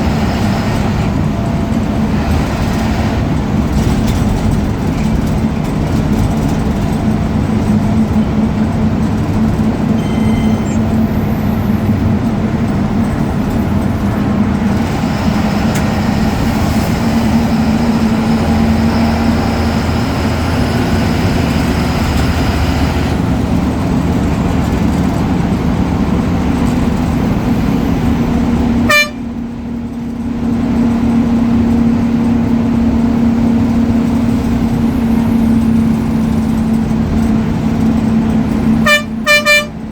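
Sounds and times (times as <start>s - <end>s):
diesel bus engine humming: 0.0s - 39.9s
turbo whistle: 10.0s - 12.0s.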